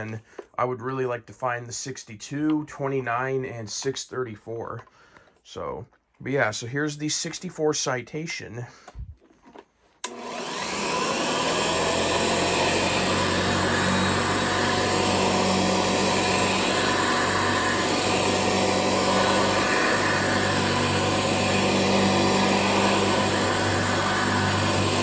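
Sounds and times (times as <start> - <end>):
vacuum cleaner switch click: 10.0 - 11.4
vacuum cleaner motor whine: 10.0 - 25.0.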